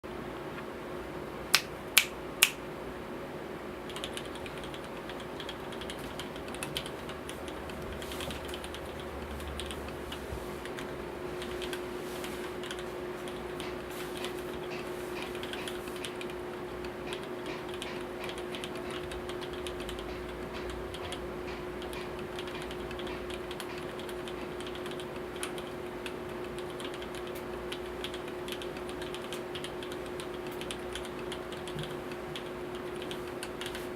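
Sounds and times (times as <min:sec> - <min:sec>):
sharp loud clicks: 0:01.5 - 0:02.6
mechanical keyboard typing: 0:03.9 - 0:33.9.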